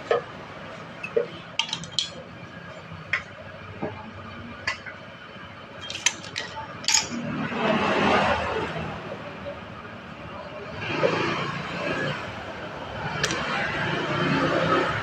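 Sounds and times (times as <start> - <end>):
metal tools clinking: 1.1 - 2.2, 5.8 - 7.2.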